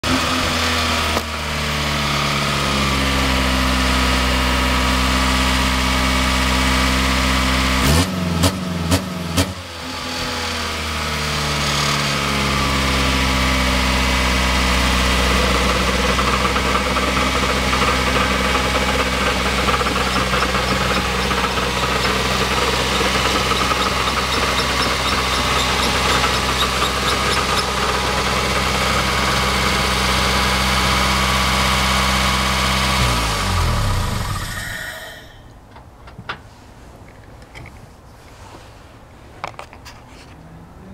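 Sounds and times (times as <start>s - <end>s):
car engine idling: 0.1s - 36.0s
engine knocks: 15.2s - 30.8s.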